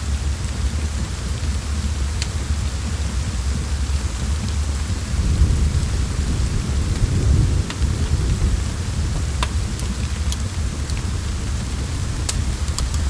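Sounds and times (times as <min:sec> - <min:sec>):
rain hissing: 0:00.0 - 0:13.0
wood fire crackling: 0:00.0 - 0:13.0
distant thunder rumble: 0:04.7 - 0:13.0.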